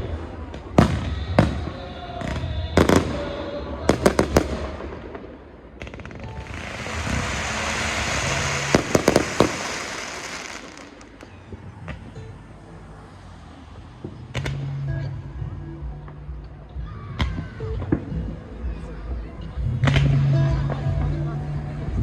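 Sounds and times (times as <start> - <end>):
hissing crackle of fireworks: 0.0 - 11.8
firework shells bursting: 5.9 - 11.4.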